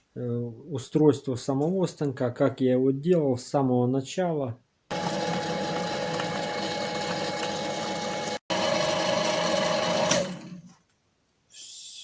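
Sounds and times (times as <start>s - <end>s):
milling machine cutting metal: 4.9s - 10.7s.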